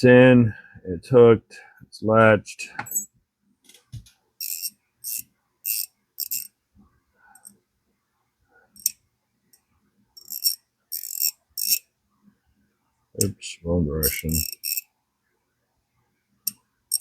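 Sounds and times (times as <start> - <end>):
ratchet pawl clicking: 4.4 - 6.5, 10.2 - 11.8, 14.0 - 14.8.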